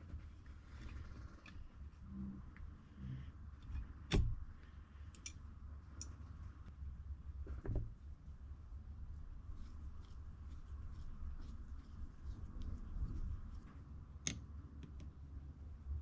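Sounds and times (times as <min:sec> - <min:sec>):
low steady hum: 0:00.0 - 0:16.0
light ticks of parts: 0:03.6 - 0:06.7, 0:12.5 - 0:15.2.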